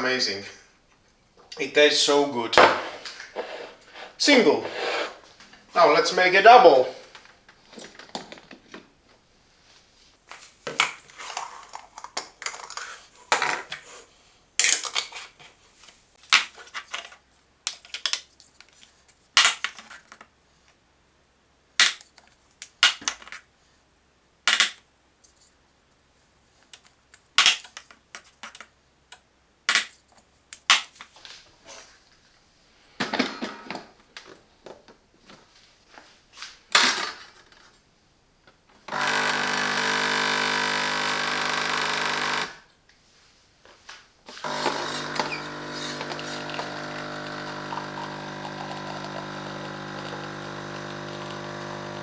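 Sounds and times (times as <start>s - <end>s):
espresso machine parts clanking: 44.4s - 52.0s.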